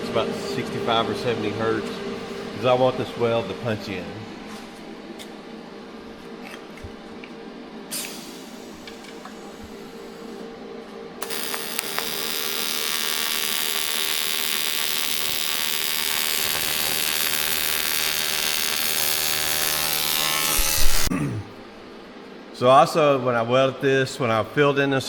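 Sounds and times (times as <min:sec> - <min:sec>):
welding arc buzzing: 0:07.9 - 0:10.4, 0:11.2 - 0:21.1.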